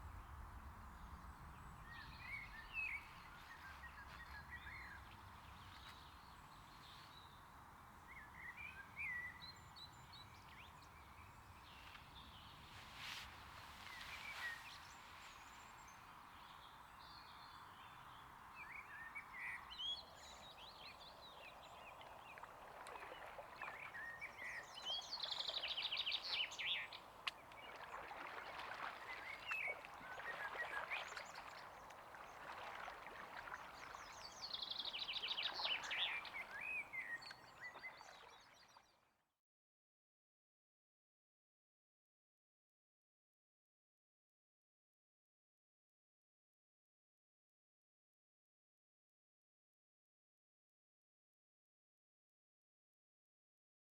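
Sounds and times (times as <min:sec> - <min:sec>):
wild birds singing: 0:14.2 - 0:38.8.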